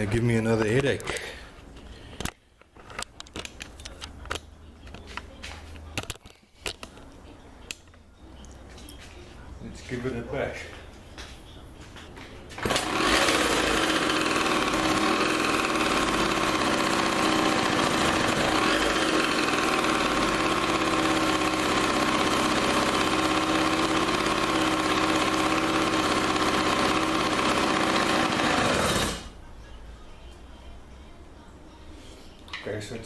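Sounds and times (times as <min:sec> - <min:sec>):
two-stroke engine running: 0:12.6 - 0:29.3.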